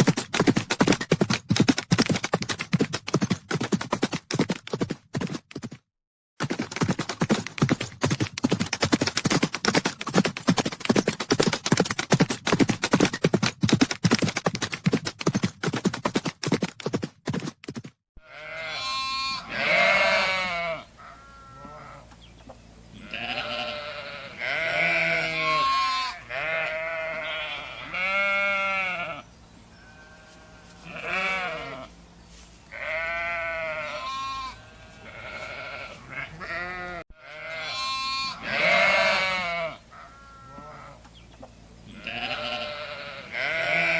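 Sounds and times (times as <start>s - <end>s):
horses galloping: 0.0s - 5.8s, 6.4s - 17.9s
sheep bleating: 18.2s - 22.1s, 22.9s - 31.9s, 32.7s - 41.0s, 41.9s - 43.9s.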